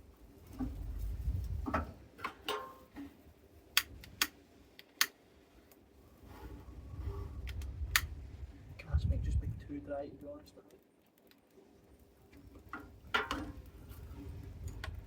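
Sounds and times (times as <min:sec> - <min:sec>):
wind buffeting microphone: 0:00.0 - 0:02.1, 0:06.2 - 0:10.4
dry kindling snapping: 0:00.4 - 0:05.8, 0:07.0 - 0:08.5, 0:10.2 - 0:15.0.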